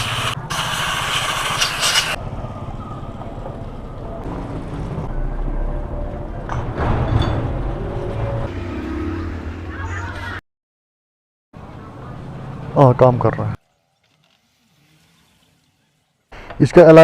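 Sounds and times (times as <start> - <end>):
low engine hum: 2.2 - 10.2.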